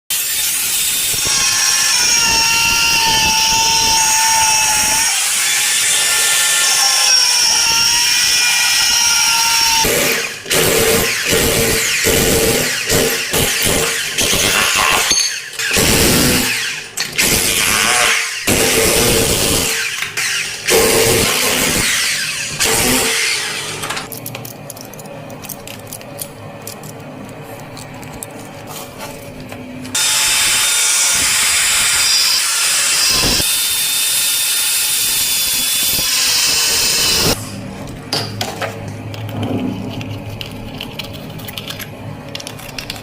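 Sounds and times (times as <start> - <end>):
electric power tool whining: 0.1 - 24.1, 29.9 - 37.5.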